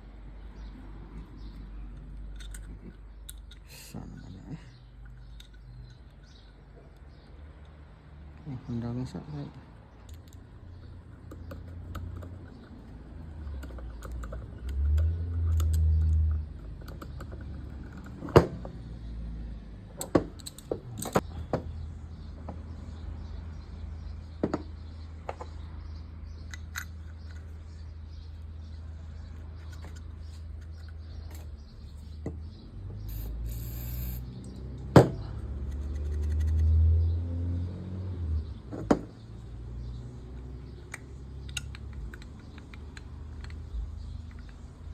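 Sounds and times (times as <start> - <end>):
small metal parts clicking: 1.9 - 7.8, 10.0 - 18.4, 20.0 - 21.4, 26.4 - 27.8, 33.1 - 34.6, 35.6 - 36.7, 40.9 - 44.9.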